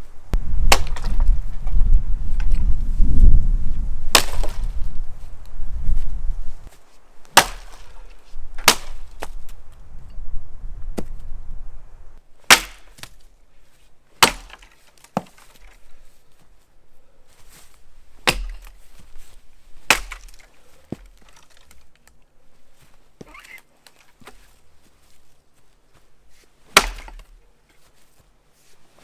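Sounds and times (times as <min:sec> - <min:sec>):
axe chopping into wood: 0:00.6 - 0:01.4, 0:04.1 - 0:04.9, 0:07.3 - 0:09.5, 0:11.0 - 0:11.2, 0:12.5 - 0:13.2, 0:14.2 - 0:15.7, 0:18.2 - 0:19.0, 0:19.8 - 0:21.8, 0:26.7 - 0:27.4.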